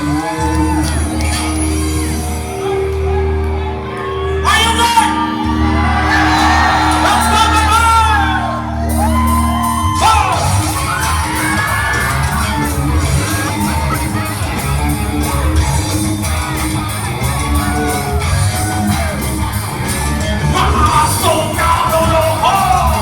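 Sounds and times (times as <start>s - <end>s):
live rock band playing: 0.0s - 23.0s
man singing lead vocal: 20.5s - 23.0s.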